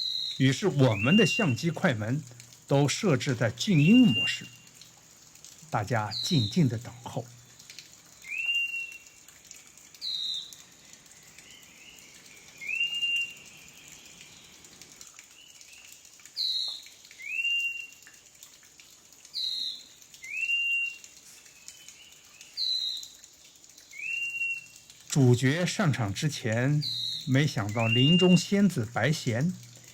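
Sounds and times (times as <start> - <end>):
bird whistling two-note call: 0.0 - 1.6, 3.8 - 4.6, 8.3 - 9.0, 12.6 - 13.4, 26.9 - 28.4.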